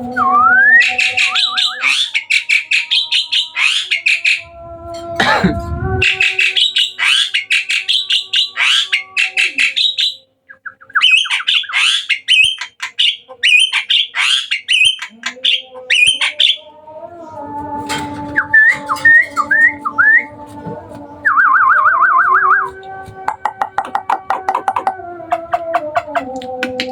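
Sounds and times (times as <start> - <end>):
starling harsh chattering song: 0.6 - 26.9
steady hum: 4.4 - 6.4.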